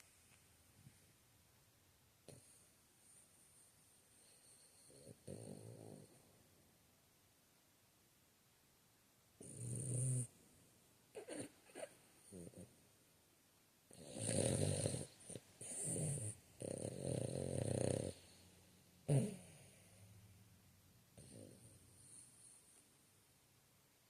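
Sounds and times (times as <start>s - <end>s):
dog sleep noises: 2.1s - 6.6s, 9.3s - 13.0s, 13.8s - 23.2s
dog snoring: 2.2s - 3.2s, 4.1s - 6.4s, 9.4s - 10.3s, 11.2s - 12.7s, 13.9s - 20.0s, 21.2s - 22.8s.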